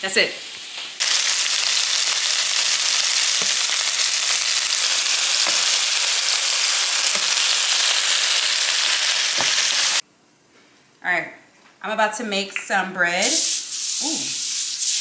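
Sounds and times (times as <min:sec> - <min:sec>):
meatballs sizzling in a pot: 0:00.0 - 0:10.0.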